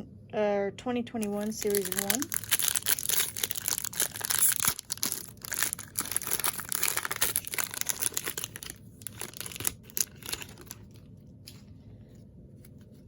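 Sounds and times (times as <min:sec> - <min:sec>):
wrapper tearing and crinkling: 0:01.2 - 0:11.1.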